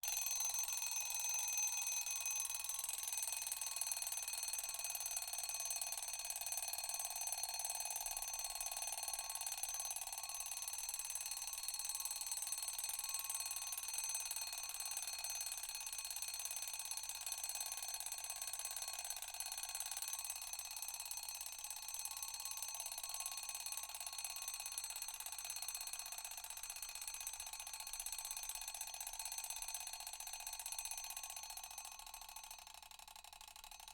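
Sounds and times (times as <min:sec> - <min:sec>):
alarm clock bell ringing: 0:00.1 - 0:03.8.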